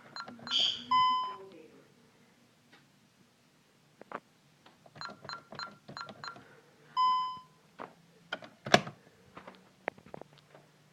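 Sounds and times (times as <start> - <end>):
keypad button beeps: 0.0 - 1.4, 5.0 - 6.4, 7.0 - 7.6
long low beep: 7.0 - 7.6.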